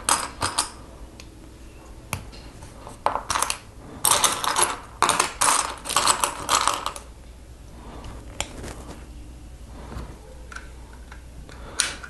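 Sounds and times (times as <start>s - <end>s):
plastic pieces clattering: 3.1s - 7.1s.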